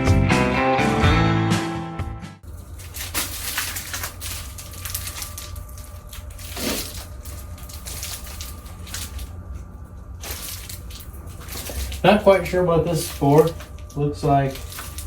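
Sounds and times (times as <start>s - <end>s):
packing material crinkling: 2.4s - 15.0s.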